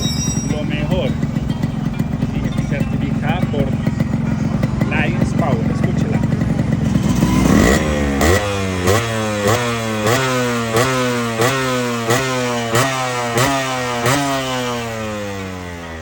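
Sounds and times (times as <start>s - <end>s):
two-stroke engine revving: 0.0s - 16.0s.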